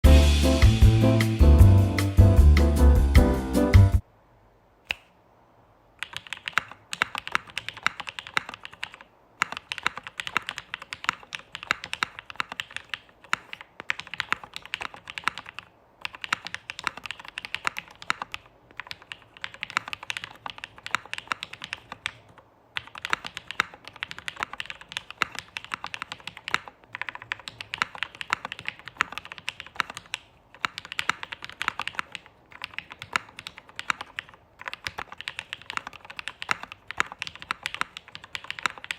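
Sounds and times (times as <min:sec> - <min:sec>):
mechanical keyboard typing: 0:06.0 - 0:38.9.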